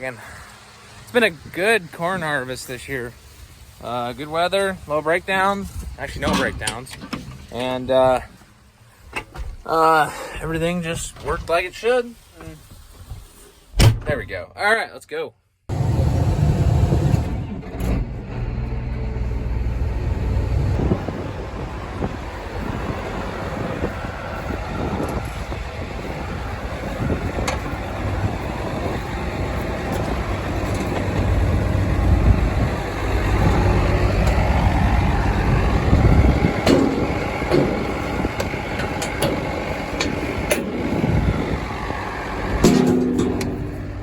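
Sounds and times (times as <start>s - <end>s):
tractor diesel engine running: 15.7s - 44.0s
knocks and rattles: 36.3s - 41.1s, 42.6s - 44.0s.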